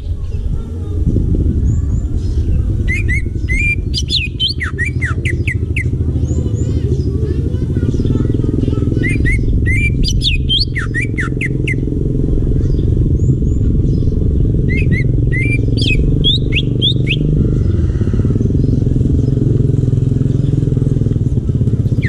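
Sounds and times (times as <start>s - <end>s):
low engine-like rumble: 0.0s - 22.0s
bird singing whistled notes: 1.9s - 6.7s, 9.0s - 11.9s, 13.3s - 17.8s.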